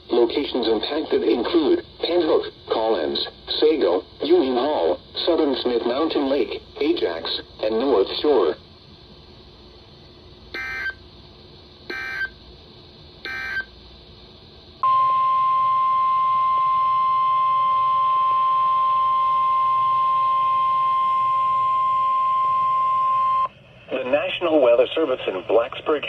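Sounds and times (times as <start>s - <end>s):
steady alarm tone: 10.6s - 11.0s, 11.9s - 12.4s, 13.3s - 13.7s, 14.8s - 23.5s.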